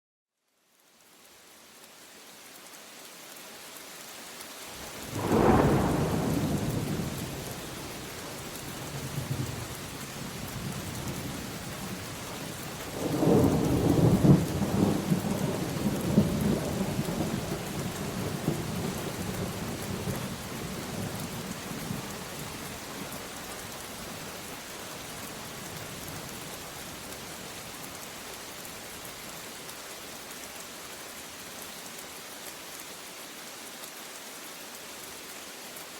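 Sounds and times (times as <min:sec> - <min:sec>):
steady rain: 0:00.4 - 0:35.9
thunder: 0:05.0 - 0:07.8.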